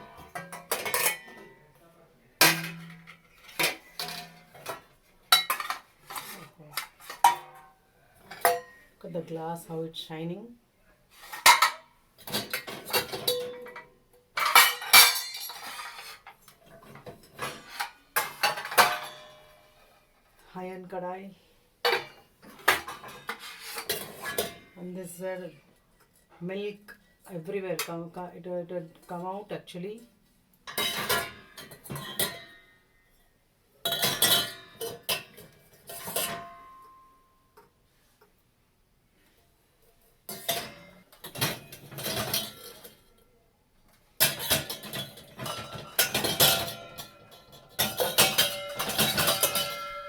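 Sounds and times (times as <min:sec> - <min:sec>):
utensils and glassware clinking: 0:00.0 - 0:01.5, 0:02.4 - 0:07.6, 0:11.3 - 0:19.7, 0:30.7 - 0:32.7, 0:33.8 - 0:37.0, 0:40.3 - 0:43.1, 0:44.2 - 0:50.0
metal dishes clattering: 0:00.0 - 0:01.6, 0:02.4 - 0:08.9, 0:11.2 - 0:20.0, 0:21.8 - 0:24.8, 0:30.7 - 0:32.8, 0:33.8 - 0:37.1, 0:40.2 - 0:43.2, 0:44.2 - 0:50.0.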